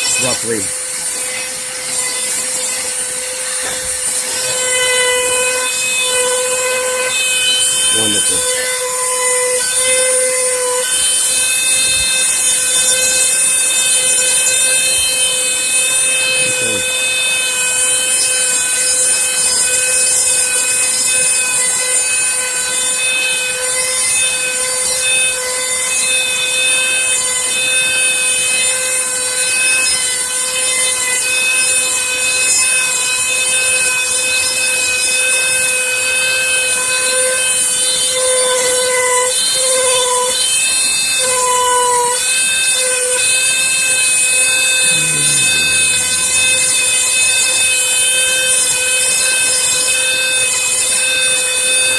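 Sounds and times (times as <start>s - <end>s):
rotary tool whining into wood: 0.0s - 21.5s, 37.4s - 47.6s.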